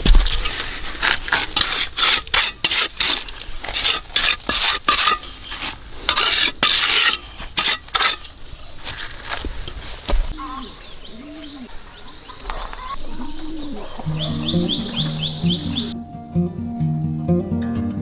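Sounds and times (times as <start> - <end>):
scraping rasping strokes: 0.0 - 9.5.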